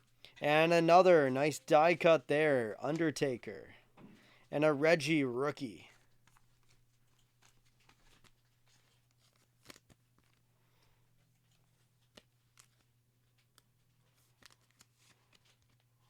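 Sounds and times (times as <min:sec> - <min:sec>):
trading cards being handled: 0:05.1 - 0:16.0.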